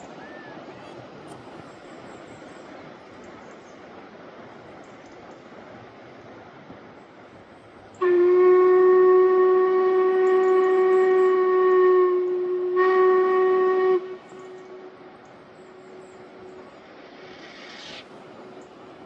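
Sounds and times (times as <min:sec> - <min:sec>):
steam locomotive whistle: 0:08.0 - 0:16.8.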